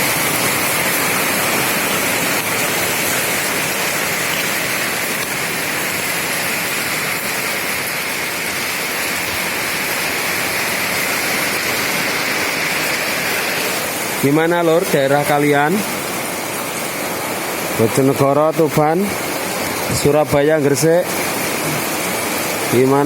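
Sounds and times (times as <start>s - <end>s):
heavy rain falling: 0.0s - 23.0s.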